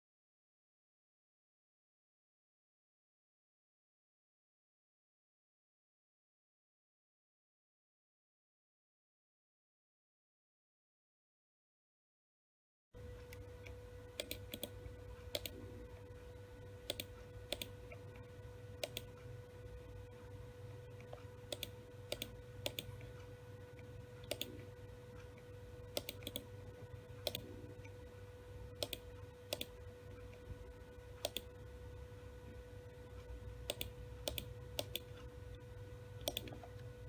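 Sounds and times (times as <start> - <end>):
hard drive clicking: 13.0 - 28.1, 28.7 - 31.7, 32.5 - 37.0
steady low hum: 13.0 - 37.0.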